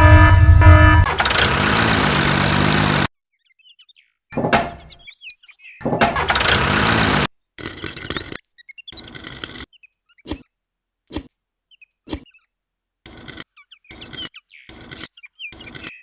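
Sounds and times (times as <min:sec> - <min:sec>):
engine running: 0:00.0 - 0:03.1, 0:06.2 - 0:07.3
bird-like chirps: 0:03.3 - 0:05.9, 0:08.1 - 0:10.4, 0:13.5 - 0:16.0.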